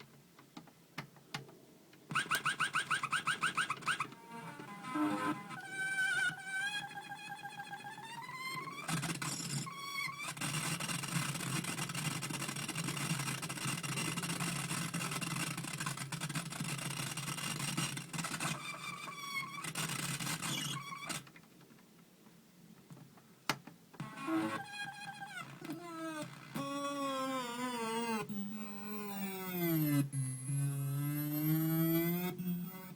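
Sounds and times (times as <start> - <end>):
harsh electronic buzzing: 2.7 - 8.3, 24.0 - 32.9
electronic tone gliding upward: 28.3 - 32.9.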